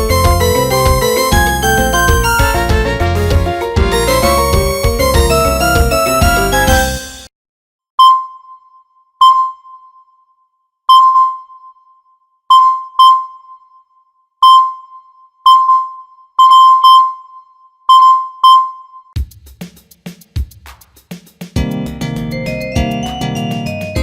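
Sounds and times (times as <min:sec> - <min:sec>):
high keyboard note ringtone: 0:00.0 - 0:07.3, 0:22.3 - 0:24.0.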